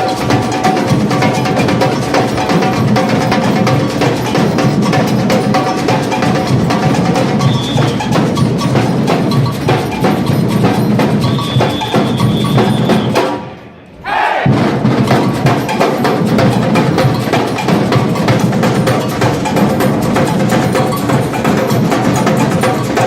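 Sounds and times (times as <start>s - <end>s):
samba drum section: 0.0s - 23.0s
high steady whistle: 7.4s - 8.2s, 11.3s - 13.9s.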